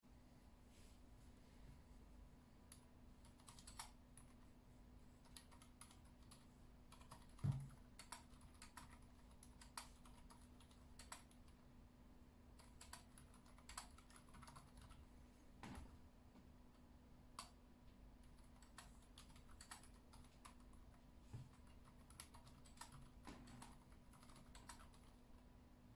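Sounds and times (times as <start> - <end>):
soft keyboard keystrokes: 2.7 - 4.4, 5.2 - 11.6, 12.6 - 15.0, 18.2 - 25.2
heavier keyboard thump: 7.4 - 7.8.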